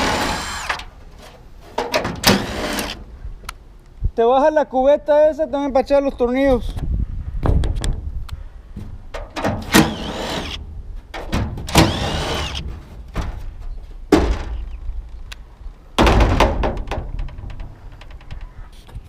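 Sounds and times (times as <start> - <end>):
metal knocks and clanks: 11.1 - 14.8, 16.0 - 18.6.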